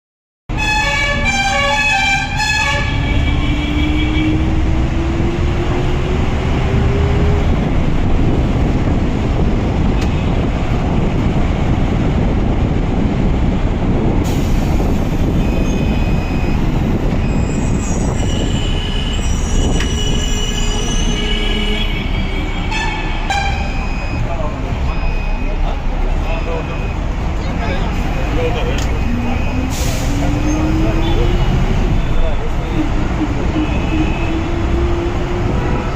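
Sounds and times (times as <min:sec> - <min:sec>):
train rumbling on track: 0:00.5 - 0:35.9
wheel squeals: 0:17.2 - 0:22.7.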